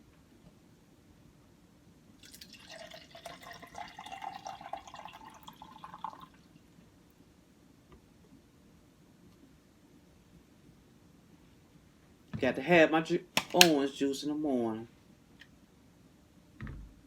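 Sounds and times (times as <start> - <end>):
juice pouring into a cup: 2.2 - 6.7.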